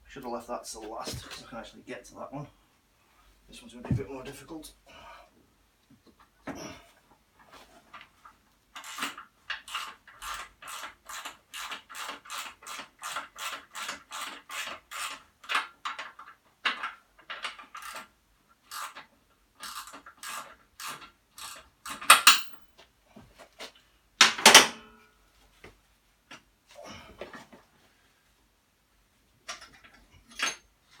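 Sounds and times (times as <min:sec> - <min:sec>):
loud metallic clanks: 0:22.1 - 0:22.6.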